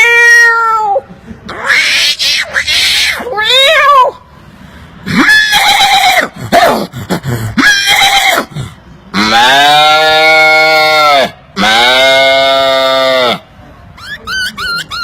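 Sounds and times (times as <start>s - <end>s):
man imitating livestock calls: 9.1s - 13.5s.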